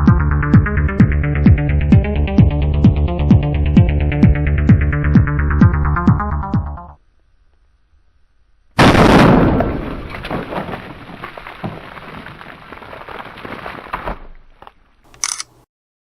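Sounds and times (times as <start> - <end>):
loud explosion boom rumbling: 8.8 - 12.4.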